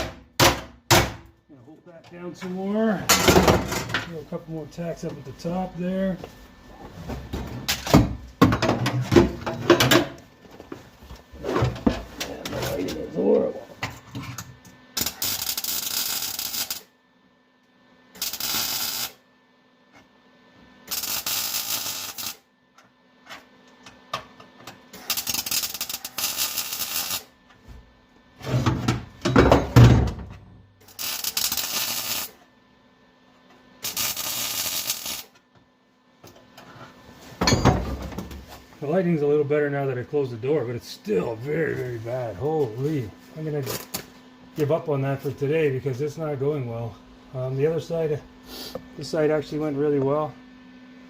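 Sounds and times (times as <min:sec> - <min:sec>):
welding arc crackling: 0:15.0 - 0:16.9, 0:18.2 - 0:19.2, 0:20.8 - 0:22.5, 0:24.9 - 0:27.3, 0:30.8 - 0:32.4, 0:33.8 - 0:35.4, 0:43.4 - 0:44.1.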